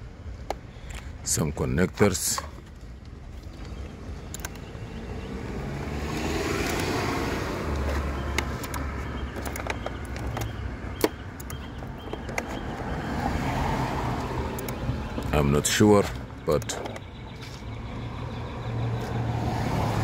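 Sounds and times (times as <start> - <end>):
vehicle engine rumble: 0.0 - 20.0
sharp clicks: 3.0 - 5.1, 6.1 - 12.9, 14.1 - 17.2.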